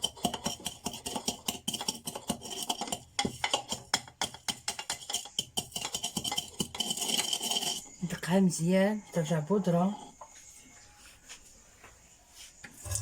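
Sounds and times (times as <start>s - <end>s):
pestle pounding in plastic mortar: 0.0s - 7.2s.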